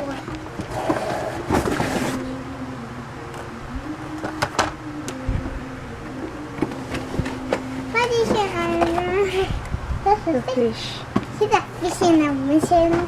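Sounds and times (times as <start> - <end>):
toy cash register humming: 0.0 - 2.5.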